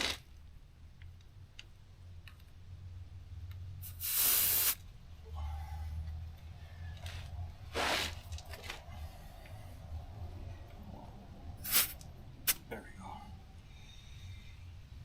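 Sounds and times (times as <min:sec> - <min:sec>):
air hissing from tire valve: 0:03.8 - 0:04.8, 0:11.6 - 0:12.6.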